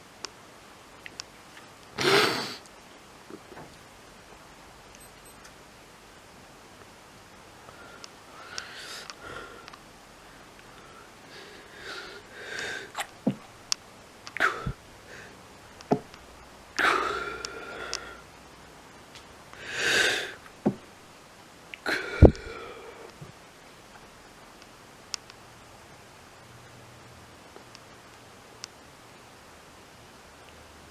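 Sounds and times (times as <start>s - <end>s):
person sneezing: 2.0s - 2.6s, 14.4s - 14.8s.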